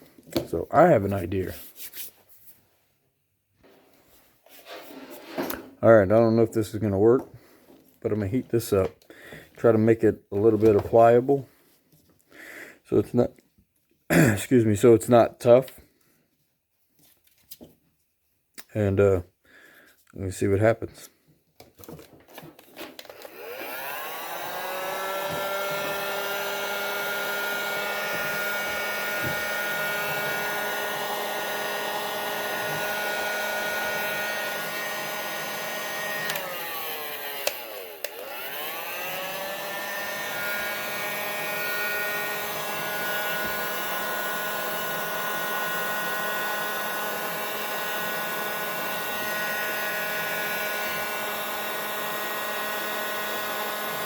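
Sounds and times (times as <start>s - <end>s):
heat gun fan whine: 23.0s - 54.0s.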